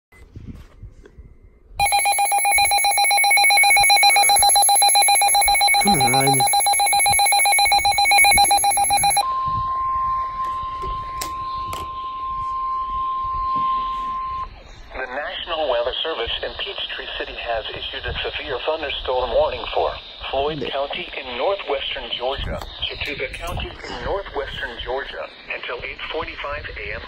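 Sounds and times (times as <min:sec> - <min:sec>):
steady single-pitched alarm tone: 0:01.8 - 0:14.5
pulsing buzzy radio alarm: 0:01.8 - 0:21.7.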